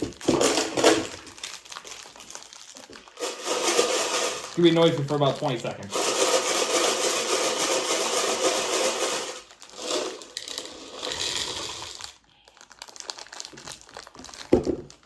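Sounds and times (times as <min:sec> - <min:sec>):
faint crinkling: 0:00.5 - 0:03.3, 0:09.5 - 0:15.0.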